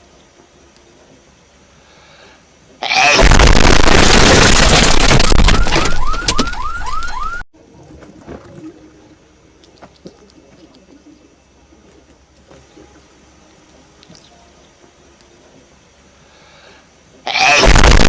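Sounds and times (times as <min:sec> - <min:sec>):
loud distorted explosion: 0:02.9 - 0:06.5, 0:17.4 - 0:18.0.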